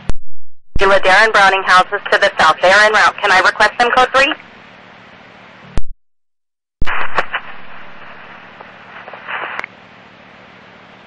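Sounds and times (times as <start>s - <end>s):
radio static hiss: 0.8s - 4.4s, 6.8s - 9.7s
radio squelch click: 6.8s - 9.7s.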